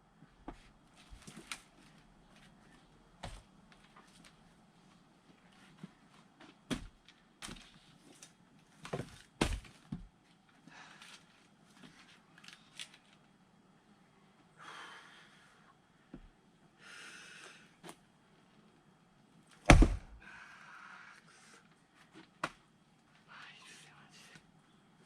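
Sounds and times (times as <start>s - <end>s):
wood being struck: 19.7s - 20.2s.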